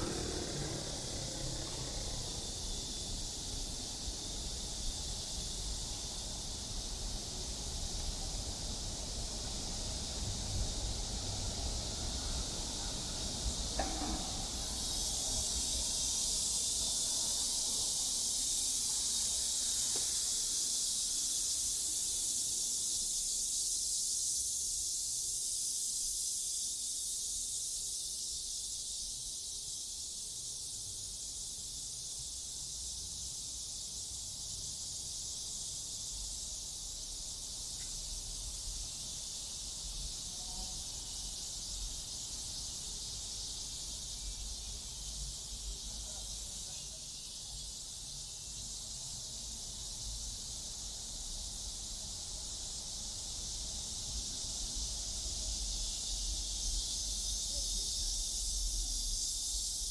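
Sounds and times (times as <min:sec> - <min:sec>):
distant traffic rumble: 0:00.0 - 0:02.8
cicadas hissing: 0:00.0 - 0:59.9.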